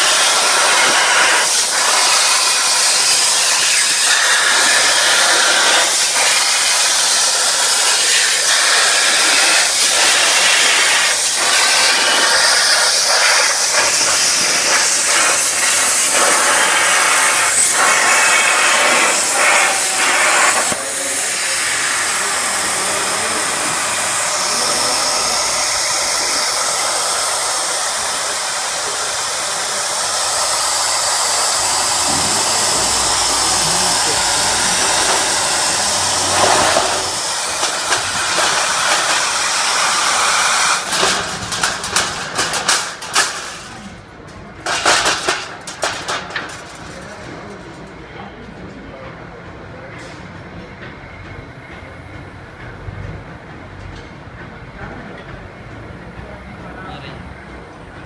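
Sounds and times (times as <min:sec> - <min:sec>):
plasma torch hissing: 0:00.0 - 0:44.0, 0:44.6 - 0:47.3
crackling: 0:10.4 - 0:43.9.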